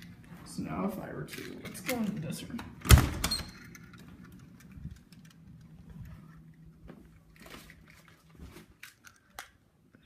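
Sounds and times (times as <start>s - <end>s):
low steady hum: 0.0s - 10.0s
handling noises: 3.5s - 9.6s
faint footsteps: 5.6s - 8.9s.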